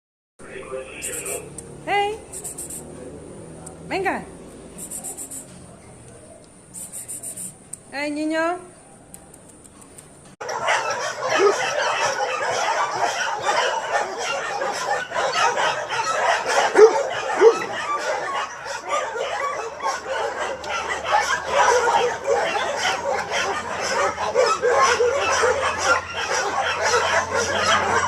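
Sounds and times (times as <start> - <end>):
clucking animal chatter: 0.4 - 7.8, 9.0 - 28.0
short rising calls: 0.8 - 5.7, 6.4 - 7.7.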